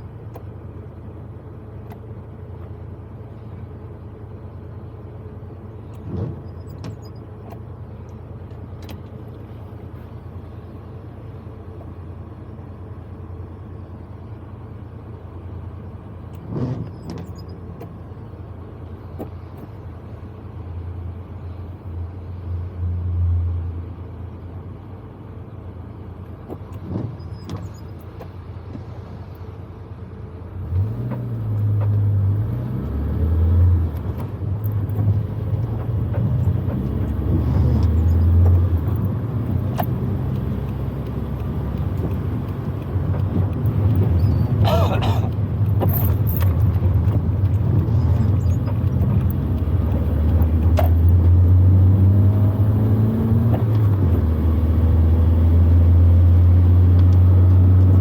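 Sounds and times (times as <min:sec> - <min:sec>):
road noise: 0:00.0 - 0:58.0
car engine running: 0:23.4 - 0:58.0.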